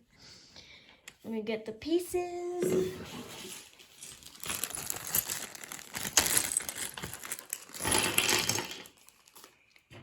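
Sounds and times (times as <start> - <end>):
packaging crinkling and rustling: 3.3 - 9.9.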